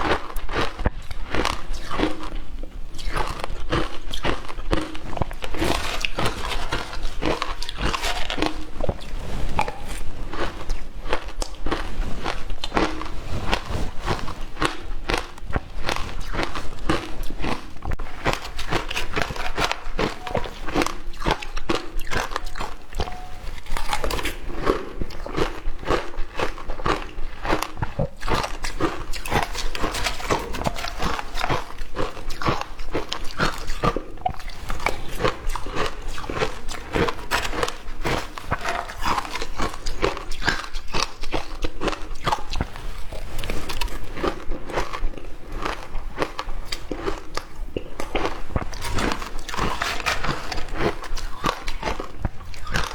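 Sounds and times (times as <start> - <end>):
crunching of chewed ice: 0.0 - 52.9.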